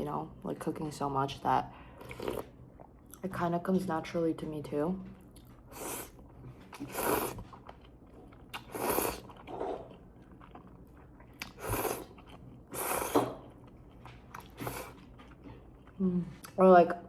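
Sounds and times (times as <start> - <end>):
person chewing noodle soup: 2.0 - 3.2, 5.2 - 16.5.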